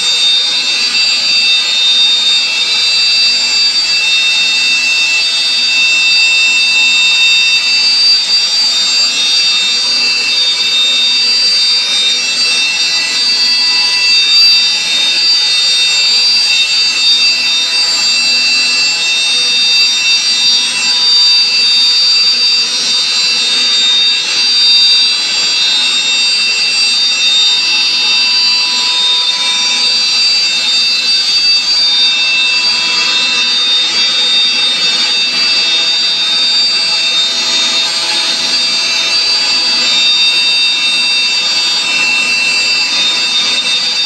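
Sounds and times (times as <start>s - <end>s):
bit cutting plywood hiss: 0.0s - 44.0s
router spindle whining: 0.0s - 44.0s.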